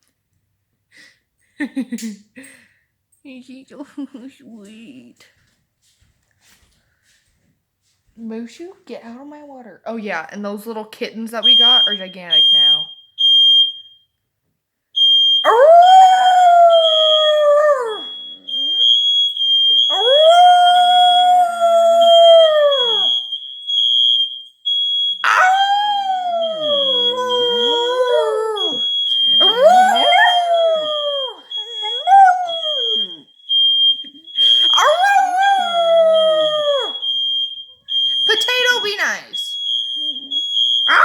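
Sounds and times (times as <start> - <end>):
smoke alarm beeping: 11.2 - 14.2, 14.9 - 41.0
dog howling: 15.5 - 18.2, 25.2 - 28.8, 29.4 - 33.2.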